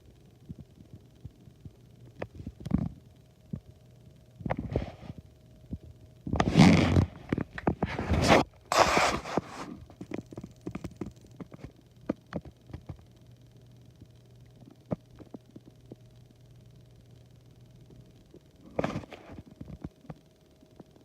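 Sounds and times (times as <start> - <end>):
scraping rustles: 6.4 - 9.9.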